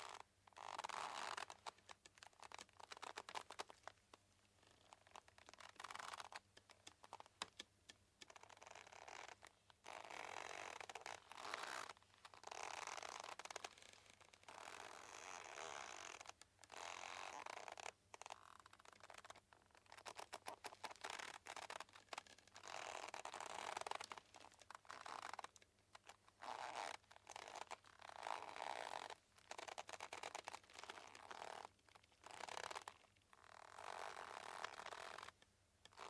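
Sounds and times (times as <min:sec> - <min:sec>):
mooring rope creaking: 0:00.1 - 0:03.9, 0:04.7 - 0:07.6, 0:14.6 - 0:35.3.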